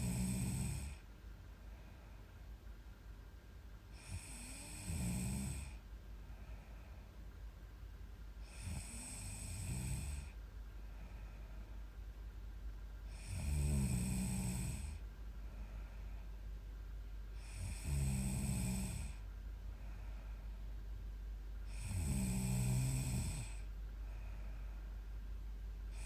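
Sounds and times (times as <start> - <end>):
woman snoring: 0.0 - 1.0, 3.9 - 5.8, 8.4 - 10.4, 13.1 - 15.0, 17.4 - 19.2, 21.7 - 23.7
faint breaths: 0.0 - 3.2, 3.8 - 26.0.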